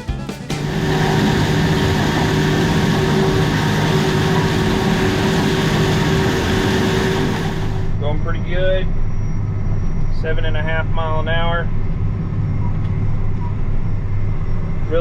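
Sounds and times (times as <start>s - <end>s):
tractor engine droning: 0.5s - 15.0s.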